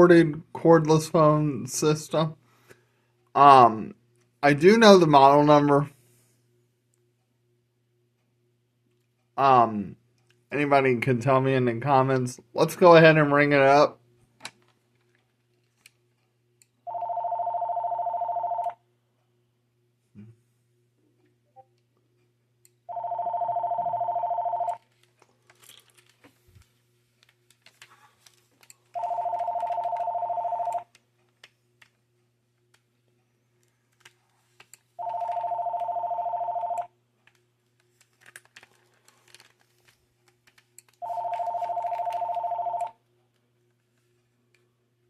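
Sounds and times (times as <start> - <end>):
phone two-tone warbling ring: 35.0 - 36.9, 41.0 - 42.9.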